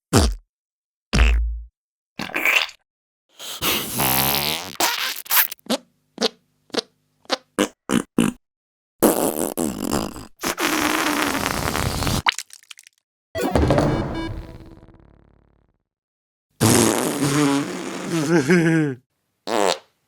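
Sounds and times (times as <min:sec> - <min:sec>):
fart sound effects: 0:01.2 - 0:02.8, 0:03.6 - 0:05.8, 0:09.0 - 0:12.2, 0:13.4 - 0:15.4, 0:16.6 - 0:18.7, 0:19.5 - 0:19.9.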